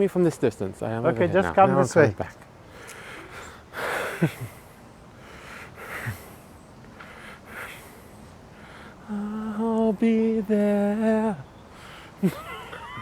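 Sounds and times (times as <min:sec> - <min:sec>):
man breathing heavily: 0:02.6 - 0:09.5, 0:11.7 - 0:12.2.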